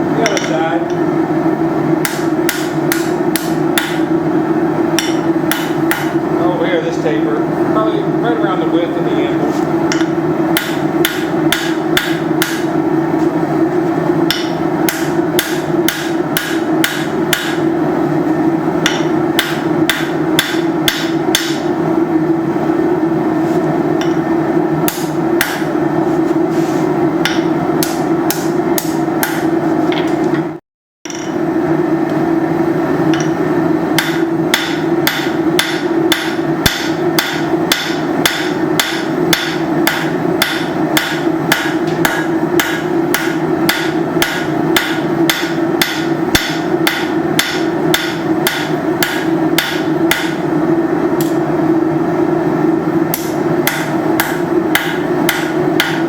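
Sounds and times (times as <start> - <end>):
hammer striking steel on anvil: 0.2 - 1.0, 2.0 - 4.1, 5.0 - 6.2, 9.9 - 12.7, 14.3 - 17.7, 18.8 - 21.7, 24.0 - 25.7, 27.2 - 30.1, 31.1 - 31.4, 33.1 - 50.5, 51.2 - 51.4, 53.1 - 56.0.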